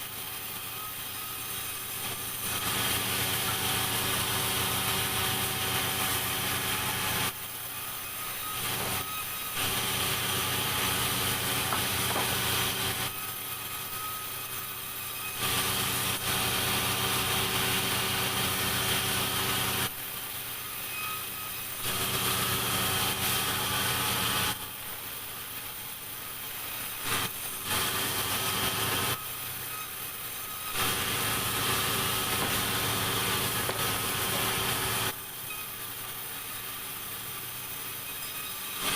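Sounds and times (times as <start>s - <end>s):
sawmill saw cutting log: 0.0s - 38.9s.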